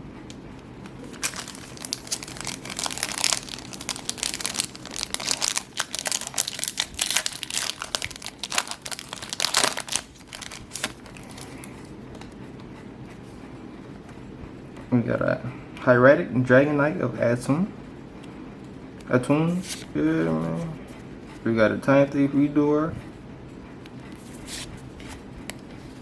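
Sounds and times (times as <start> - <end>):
foil wrapper crinkling: 0.9 - 11.8.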